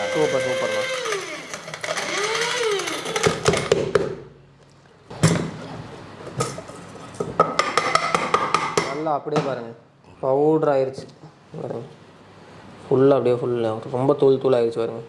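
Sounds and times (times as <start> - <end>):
mixer grinder motor running: 0.0 - 3.7.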